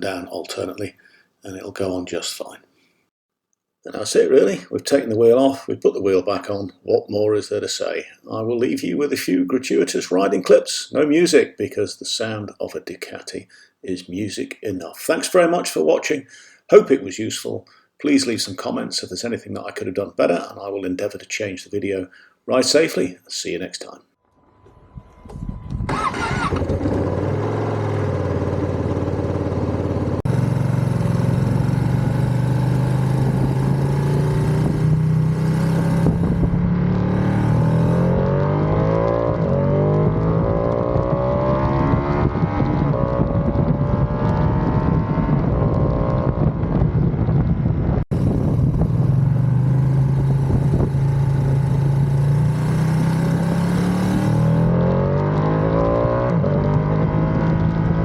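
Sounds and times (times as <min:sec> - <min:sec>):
motorcycle engine revving: 0:25.3 - 0:47.4, 0:48.1 - 0:58.0.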